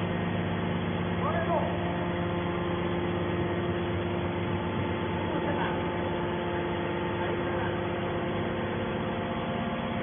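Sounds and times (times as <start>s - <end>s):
electric motor and pump humming: 0.0s - 10.0s.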